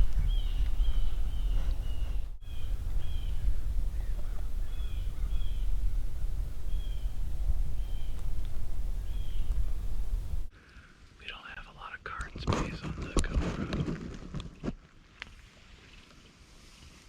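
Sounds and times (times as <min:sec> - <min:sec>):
bird calling: 0:00.0 - 0:06.0, 0:06.7 - 0:08.4, 0:09.0 - 0:09.9
wind on microphone: 0:00.0 - 0:10.5.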